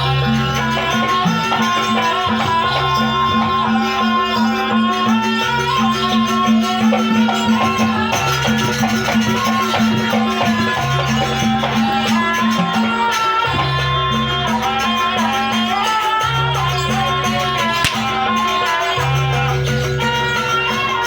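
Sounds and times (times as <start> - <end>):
percussion strikes: 15.8 - 20.7.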